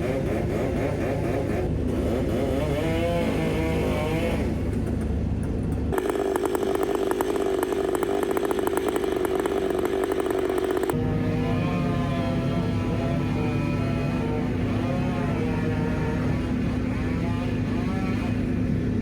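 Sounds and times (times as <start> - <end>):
chainsaw cutting wood: 0.0 - 5.0, 5.8 - 11.0
heavy machine engine revving: 0.0 - 5.0, 5.9 - 16.7.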